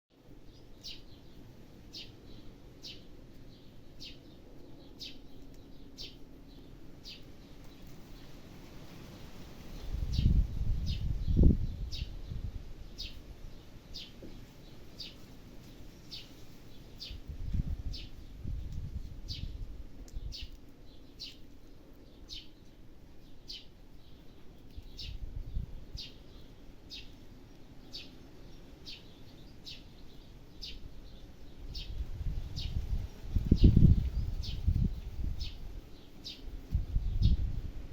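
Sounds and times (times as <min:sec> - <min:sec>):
bird chirping: 0:00.4 - 0:08.4, 0:09.2 - 0:18.3, 0:20.2 - 0:37.5.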